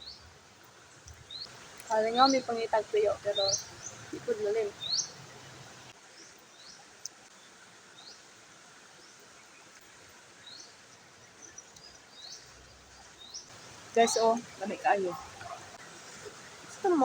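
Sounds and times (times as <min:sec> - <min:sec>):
steady outdoor hiss: 0:00.0 - 0:17.0
small bird chirping: 0:01.0 - 0:07.4.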